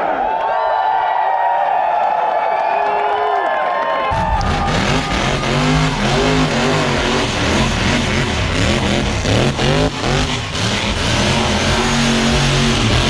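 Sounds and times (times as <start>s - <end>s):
car engine revving: 4.1s - 13.0s
steady rushing noise: 4.2s - 13.0s.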